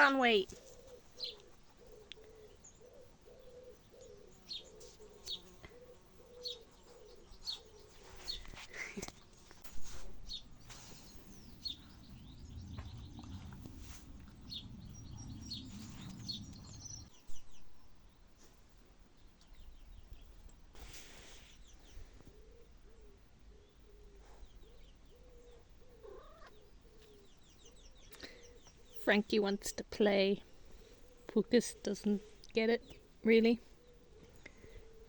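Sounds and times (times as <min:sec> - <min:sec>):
small birds chirping: 0:00.0 - 0:35.0
wavering cooing: 0:00.6 - 0:08.0, 0:25.1 - 0:27.3
low rumbling noise: 0:09.7 - 0:18.1.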